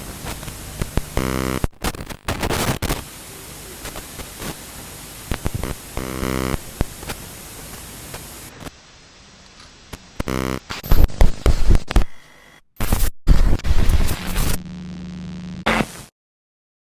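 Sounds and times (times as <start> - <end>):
short buzzes: 0.0 - 8.5
loud distorted noise bursts: 0.0 - 8.8
harsh static noise: 0.0 - 16.1.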